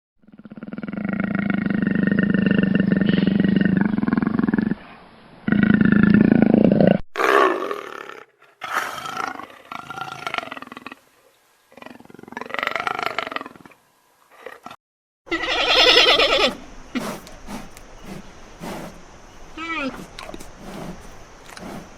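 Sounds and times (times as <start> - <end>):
lion roaring: 16.4 - 19.0, 19.8 - 21.9.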